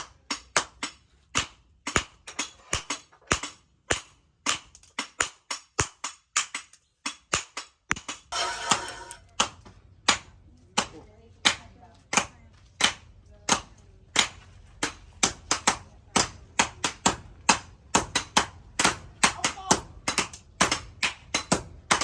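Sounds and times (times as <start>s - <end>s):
hammer blows on steel anvil: 8.3s - 9.3s.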